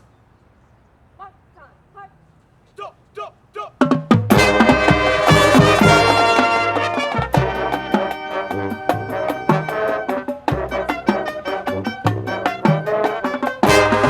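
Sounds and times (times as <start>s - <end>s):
marching band playing: 3.7s - 14.0s
drum strokes: 3.8s - 14.0s.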